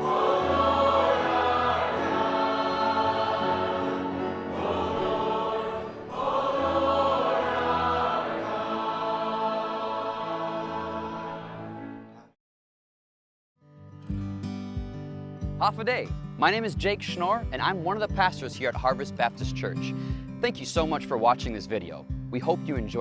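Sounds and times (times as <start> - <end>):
congregation and band singing: 0.0 - 12.0.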